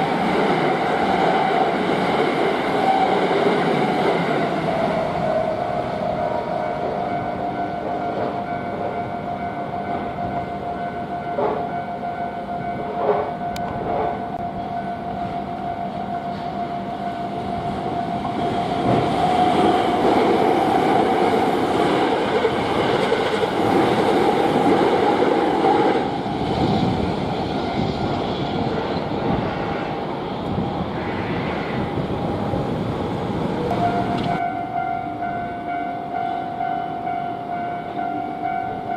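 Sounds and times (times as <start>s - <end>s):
electric train passing: 0.0s - 38.9s
level crossing alarm bell: 4.5s - 21.5s, 33.7s - 38.9s.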